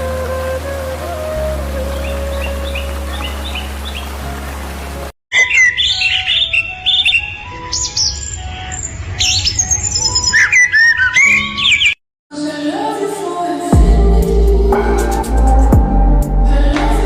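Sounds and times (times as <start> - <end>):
birds chirping and whistling: 0.0 - 4.4, 5.3 - 12.0
background music: 0.0 - 5.1, 12.3 - 17.0.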